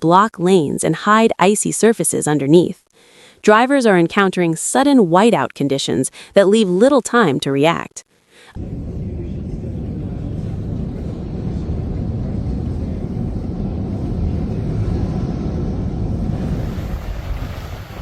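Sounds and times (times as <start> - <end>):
blizzard wind buffeting microphone: 8.6 - 18.0.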